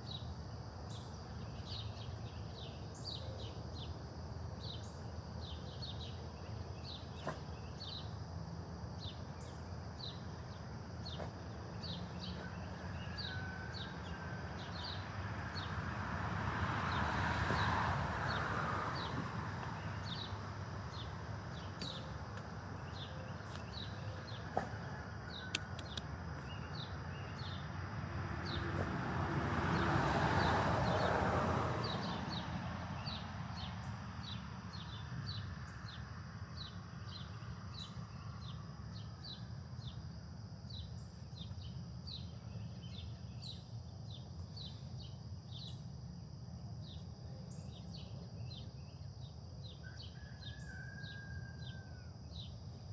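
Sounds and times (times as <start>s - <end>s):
low outdoor rumble: 0.0s - 32.9s.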